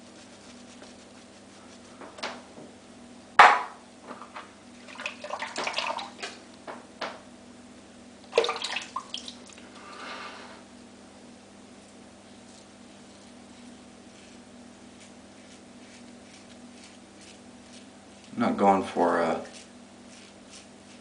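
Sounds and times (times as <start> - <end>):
sharp knock: 3.4 - 3.8
water splashing in a sink: 4.8 - 6.4, 8.3 - 9.7.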